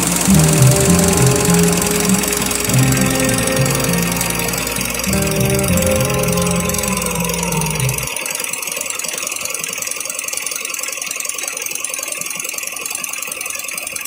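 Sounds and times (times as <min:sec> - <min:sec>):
embroidery machine stitching: 0:00.0 - 0:08.1.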